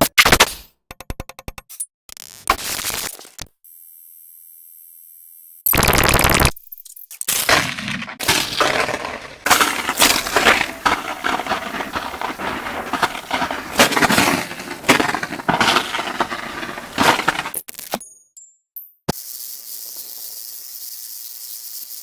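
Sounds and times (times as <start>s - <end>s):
sped-up impacts and crashes: 7.3s - 17.6s.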